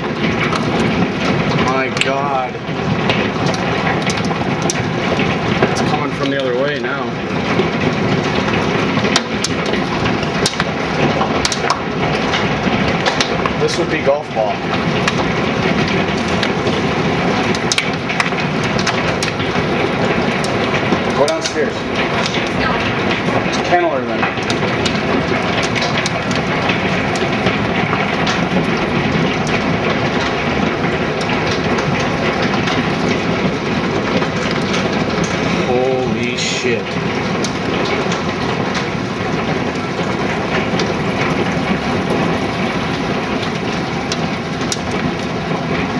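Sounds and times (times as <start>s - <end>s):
hailstones cracking on hard surface: 0.0s - 45.9s
heavy hail patter: 0.0s - 45.9s
rushing roar of ice and rain: 0.0s - 45.9s.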